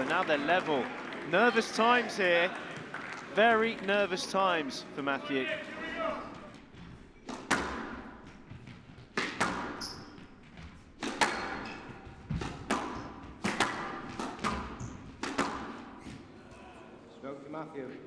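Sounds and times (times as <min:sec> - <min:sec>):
court shoes squeaking: 0:06.1 - 0:16.6
squash ball hitting rackets: 0:07.2 - 0:16.2
squash ball smacking walls: 0:07.3 - 0:08.0, 0:09.2 - 0:09.8, 0:11.0 - 0:15.8.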